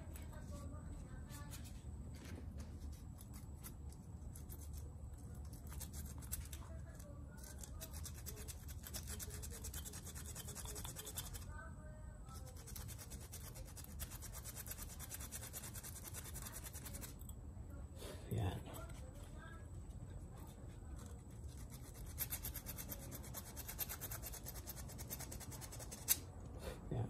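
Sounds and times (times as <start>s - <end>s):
clicking and scratching of parts: 2.9s - 11.5s, 20.3s - 26.3s.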